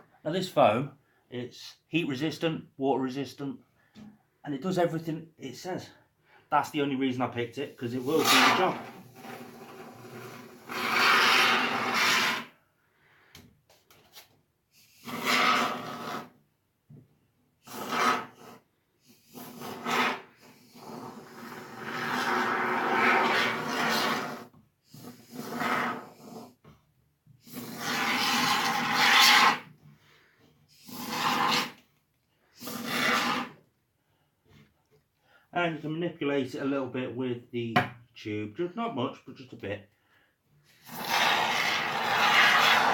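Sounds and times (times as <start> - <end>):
expanding foam spraying: 7.9 - 12.5, 17.6 - 26.5, 27.4 - 29.7, 30.7 - 31.8, 32.6 - 33.6, 40.8 - 42.9.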